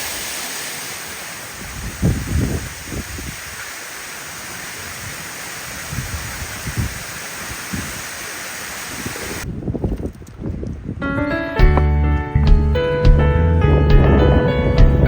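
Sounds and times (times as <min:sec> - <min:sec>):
waterfall rushing: 0:00.0 - 0:09.4
wind buffeting microphone: 0:01.3 - 0:03.8, 0:04.7 - 0:11.9, 0:12.6 - 0:15.0.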